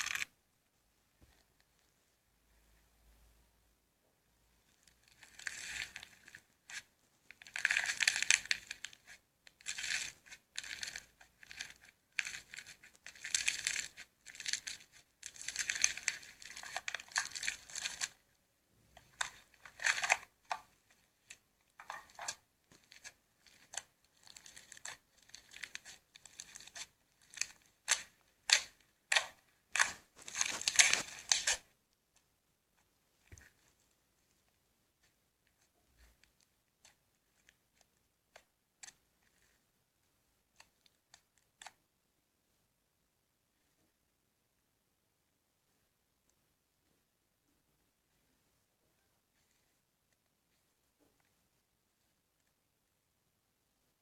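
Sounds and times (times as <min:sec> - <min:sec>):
slime squishing and crackling: 0:04.8 - 0:18.2, 0:18.9 - 0:31.7.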